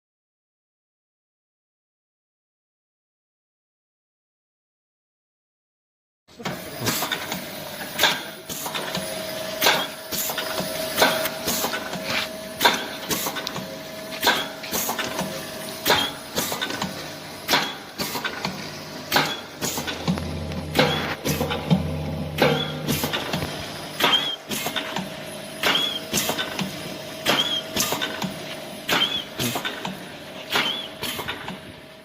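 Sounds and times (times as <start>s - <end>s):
machine clacking: 6.4s - 31.6s
motor hum: 8.7s - 32.0s.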